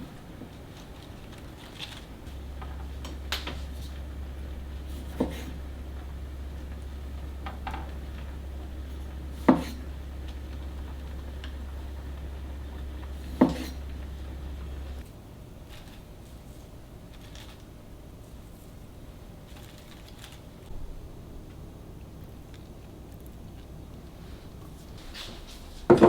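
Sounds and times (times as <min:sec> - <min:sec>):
low steady hum: 0:00.0 - 0:15.3.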